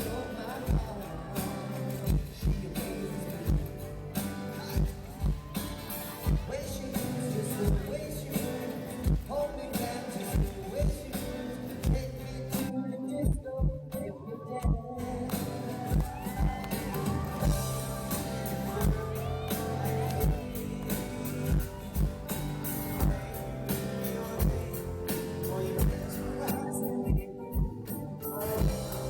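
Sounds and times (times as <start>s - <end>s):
wordless vocals: 0.0s - 29.0s
drum beat: 4.8s - 6.7s, 15.9s - 26.4s, 28.6s - 29.0s
guitar chords: 14.8s - 29.0s.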